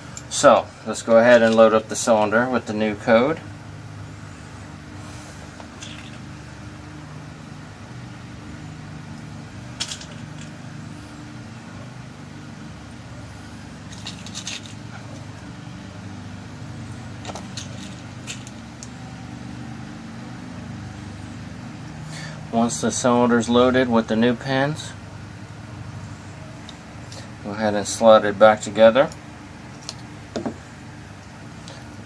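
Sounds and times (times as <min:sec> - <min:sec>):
steady low hum: 0:00.0 - 0:32.0
lock pins clicking: 0:17.2 - 0:19.0.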